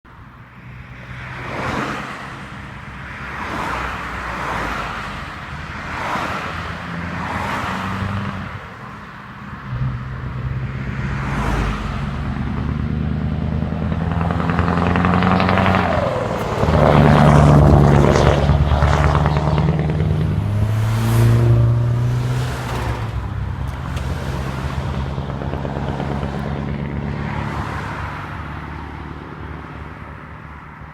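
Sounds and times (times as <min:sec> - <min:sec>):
truck diesel engine accelerating: 0:09.5 - 0:29.7.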